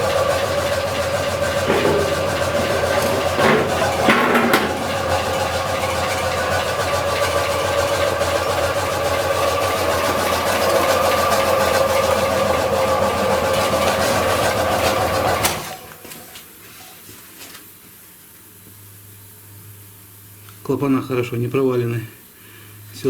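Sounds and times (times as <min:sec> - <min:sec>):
car engine running with heavy knock: 0:00.0 - 0:15.6.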